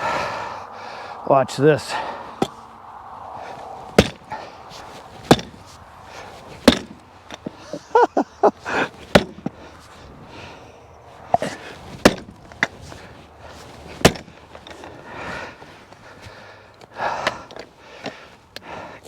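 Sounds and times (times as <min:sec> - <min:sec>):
log being struck: 0:03.9 - 0:04.5, 0:05.2 - 0:05.7, 0:06.6 - 0:07.4, 0:09.1 - 0:09.6, 0:11.3 - 0:12.4, 0:14.0 - 0:14.4.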